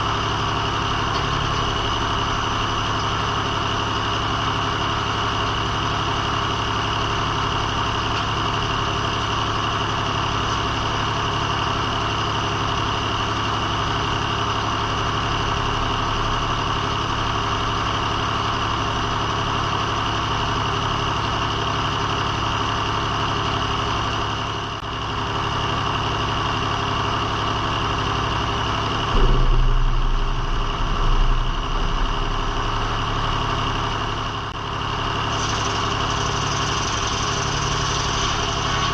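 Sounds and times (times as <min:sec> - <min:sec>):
heavy low rumble: 0:00.0 - 0:04.0, 0:14.8 - 0:18.6, 0:28.1 - 0:35.3
sawmill power unit running: 0:00.0 - 0:38.9.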